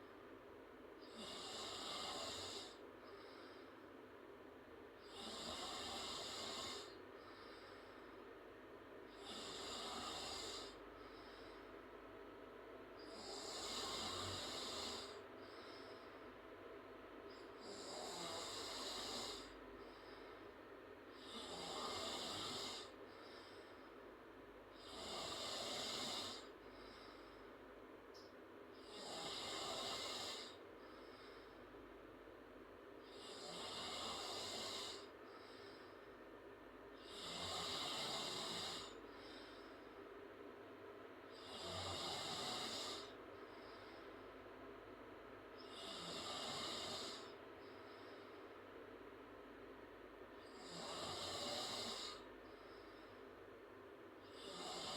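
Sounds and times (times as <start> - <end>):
girl snoring: 1.1 - 2.8, 5.0 - 7.0, 9.1 - 10.8, 13.0 - 15.2, 17.6 - 19.5, 21.2 - 23.0, 24.8 - 26.5, 28.9 - 30.6, 33.2 - 35.1, 37.0 - 39.0, 41.4 - 43.2, 45.7 - 47.4, 50.5 - 52.2, 54.3 - 54.9.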